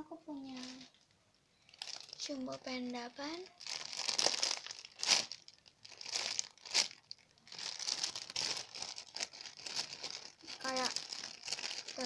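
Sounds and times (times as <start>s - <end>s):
plastic packaging crinkling: 0.3s - 12.0s.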